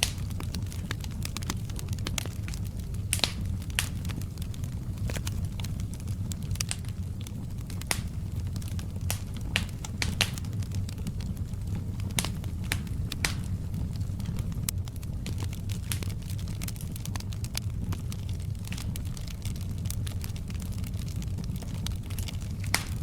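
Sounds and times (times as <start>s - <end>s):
fire crackling and popping: 0.0s - 23.0s
fire flames rumbling: 0.0s - 23.0s.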